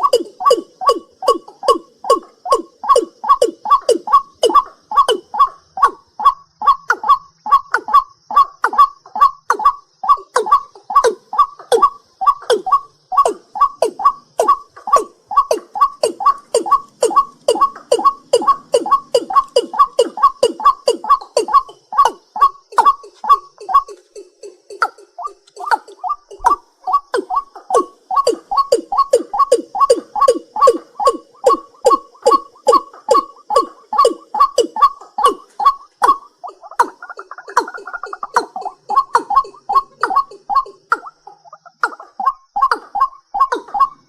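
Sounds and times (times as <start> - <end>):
faint high insect-like hum: 0.0 - 44.0
night bird calling: 0.0 - 44.0.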